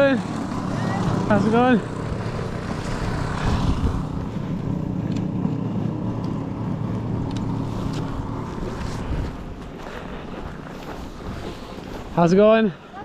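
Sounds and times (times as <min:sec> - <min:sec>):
vehicle engine humming: 0:00.0 - 0:13.0
wind rumbling on microphone: 0:01.9 - 0:12.2.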